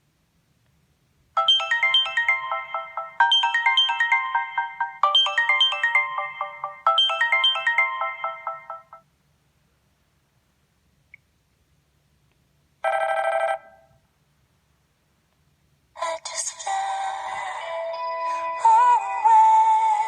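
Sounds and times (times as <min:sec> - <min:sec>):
ringtone melody of short notes: 0:01.4 - 0:09.0.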